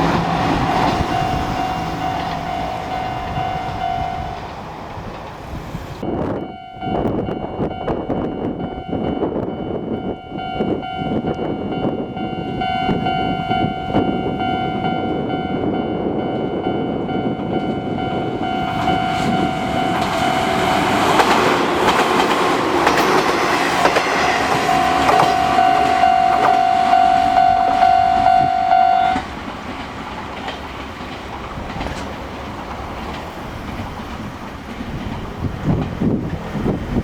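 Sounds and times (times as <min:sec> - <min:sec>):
level crossing warning bell: 0:00.0 - 0:04.6, 0:06.0 - 0:22.0, 0:23.2 - 0:29.3
train wheels clacking: 0:00.0 - 0:06.0, 0:17.6 - 0:37.0.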